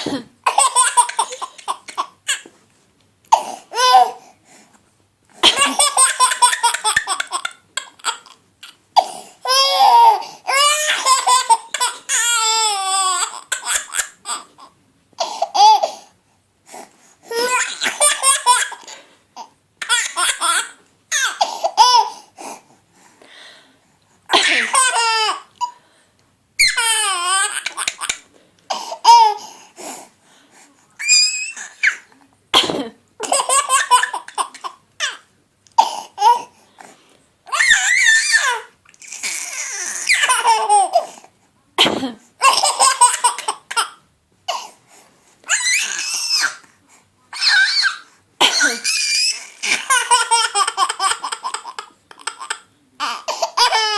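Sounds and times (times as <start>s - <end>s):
woman coughing: 0.0s - 0.7s, 5.4s - 6.0s, 24.3s - 24.9s, 32.6s - 33.0s, 41.8s - 42.3s, 48.4s - 49.0s
baby boy laughing: 0.0s - 2.5s, 5.4s - 8.8s, 9.4s - 16.0s, 17.3s - 22.1s, 24.3s - 25.7s, 26.6s - 29.4s, 33.2s - 35.2s, 37.5s - 41.1s, 41.8s - 44.0s, 47.4s - 53.9s.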